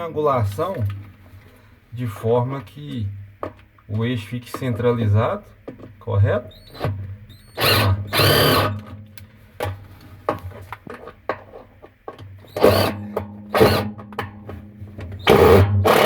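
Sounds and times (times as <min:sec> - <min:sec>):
electric drill-driver running: 0:07.6 - 0:08.8, 0:12.5 - 0:13.0, 0:13.6 - 0:13.9, 0:15.3 - 0:16.0.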